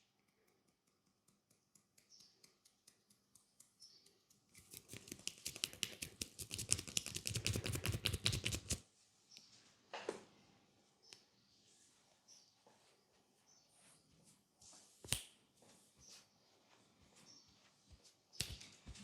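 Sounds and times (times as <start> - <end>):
scissors snipping: 4.5 - 8.8.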